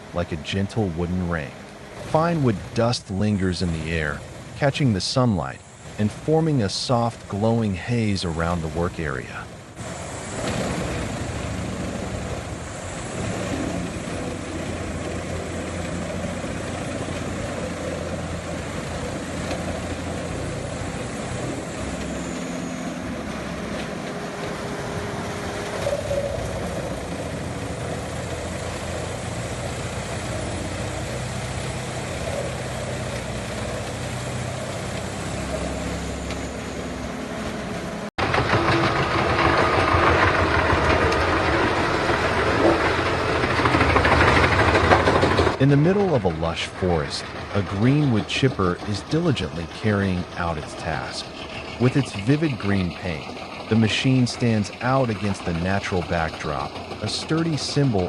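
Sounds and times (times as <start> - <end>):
wood chipper engine drone: 0.0 - 58.0
wood being shredded: 38.2 - 46.5.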